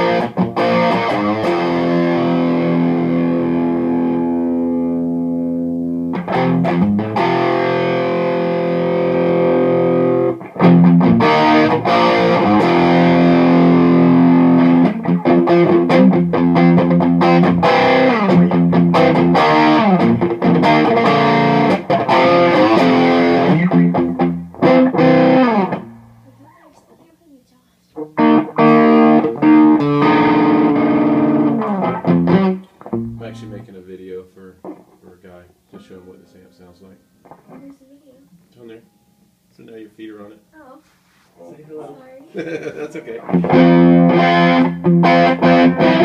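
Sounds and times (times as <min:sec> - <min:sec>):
overdriven electric guitar: 0:00.0 - 0:26.4, 0:28.0 - 0:33.2, 0:43.1 - 0:46.0.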